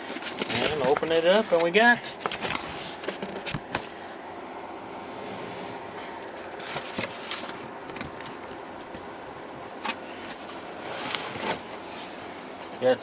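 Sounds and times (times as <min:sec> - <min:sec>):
packaging rustling and crinkling: 0:00.0 - 0:03.9, 0:06.2 - 0:12.8.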